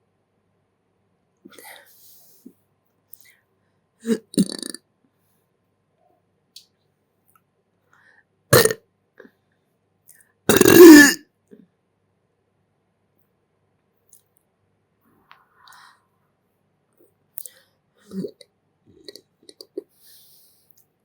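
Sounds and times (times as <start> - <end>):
person burping: 4.0 - 4.8, 8.6 - 8.8, 10.5 - 11.2, 18.1 - 18.4.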